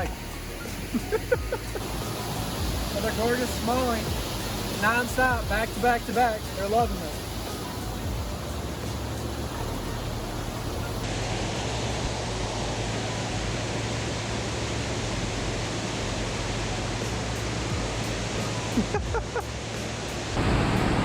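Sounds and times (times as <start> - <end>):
water pouring over a dam: 0.0 - 21.0.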